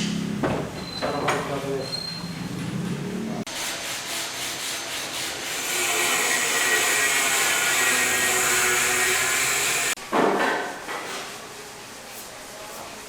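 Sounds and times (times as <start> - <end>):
tool scraping material: 3.5 - 10.0.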